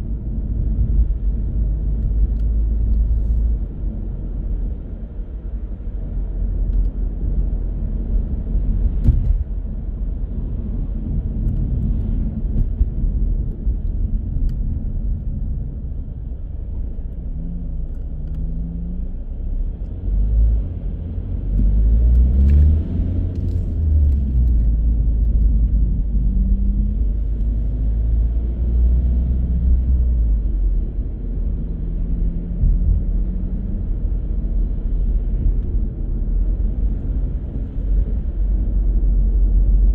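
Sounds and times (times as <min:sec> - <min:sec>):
road rumble: 0:00.0 - 0:39.9
car engine accelerating: 0:17.2 - 0:30.6.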